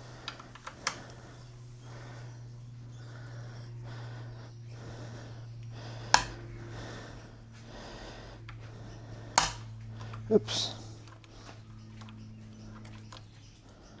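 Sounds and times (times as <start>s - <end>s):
steady low hum: 0.0s - 14.0s
tool handling noises: 6.0s - 13.8s
sharp click: 6.1s - 6.4s.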